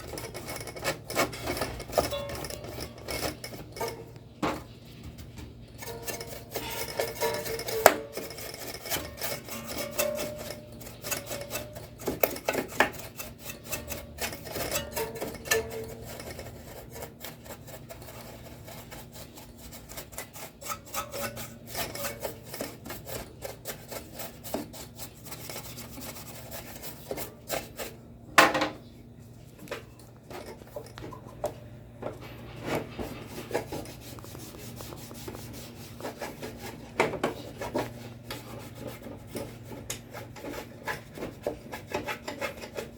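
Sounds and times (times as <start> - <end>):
scrubbing on plastic casing: 32.5 - 42.9.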